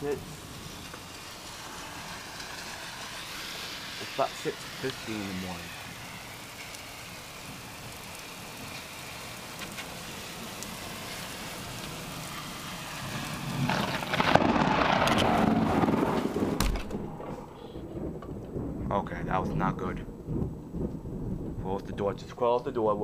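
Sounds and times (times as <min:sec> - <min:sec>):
steady heavy rain: 0:00.0 - 0:17.0
thunder crack and rumble: 0:11.6 - 0:23.0.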